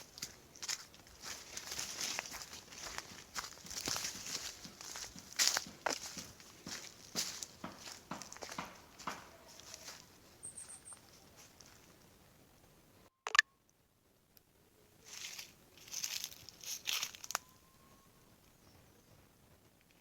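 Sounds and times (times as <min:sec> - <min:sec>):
footsteps crunching on forest floor: 0:00.0 - 0:12.1, 0:15.1 - 0:17.5
faint high bird chirp: 0:09.3 - 0:11.8, 0:16.9 - 0:19.3
sharp click: 0:13.2 - 0:13.4.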